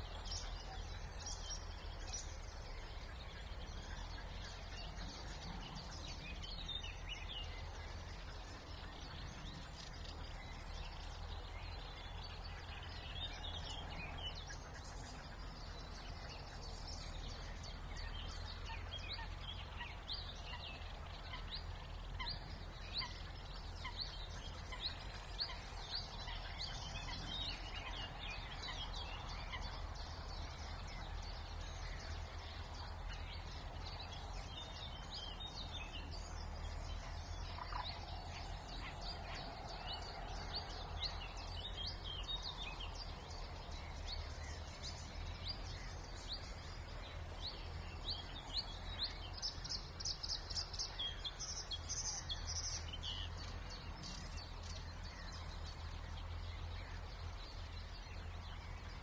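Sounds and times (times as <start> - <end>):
low background rumble: 0.0 - 59.0
songbirds singing: 0.0 - 59.0.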